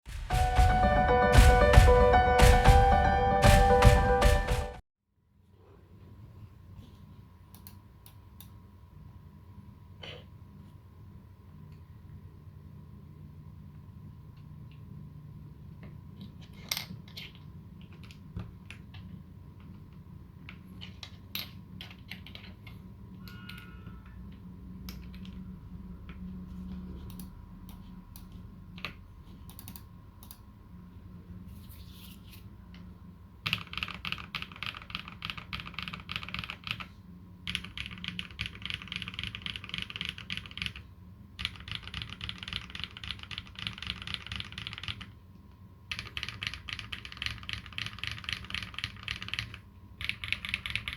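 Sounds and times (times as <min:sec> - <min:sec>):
mechanical keyboard typing: 0:21.8 - 0:22.8, 0:33.4 - 0:45.2, 0:45.9 - 0:50.9.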